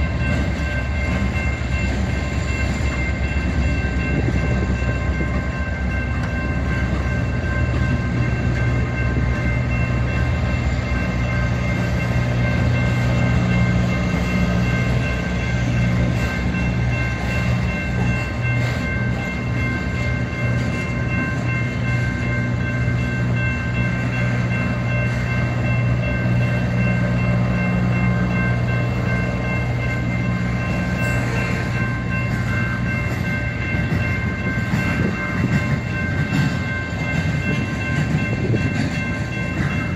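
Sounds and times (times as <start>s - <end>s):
freight train rumbling: 0.0s - 39.9s.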